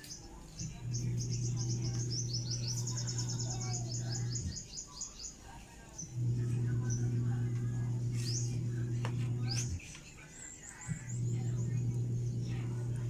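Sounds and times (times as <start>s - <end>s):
steady low hum: 0.0s - 5.0s, 5.7s - 13.0s
small bird trilling: 0.0s - 5.4s.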